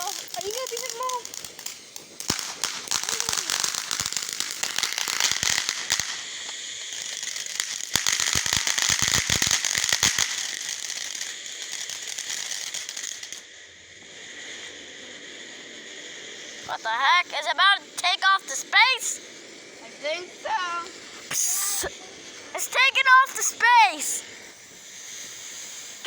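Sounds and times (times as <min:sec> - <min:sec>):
rapid firework pops: 0:00.0 - 0:13.5
firework hissing and crackling: 0:00.0 - 0:26.0.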